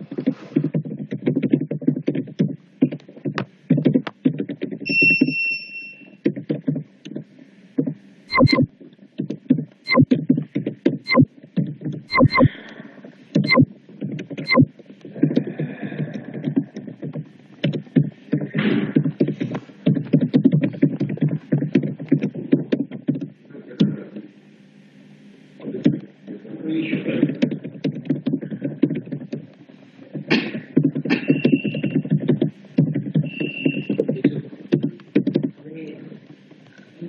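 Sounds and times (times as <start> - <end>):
electronic music with busy beat: 8.3 - 8.7, 9.9 - 10.3, 11.1 - 11.3, 12.1 - 12.5, 13.4 - 13.7, 14.4 - 14.7.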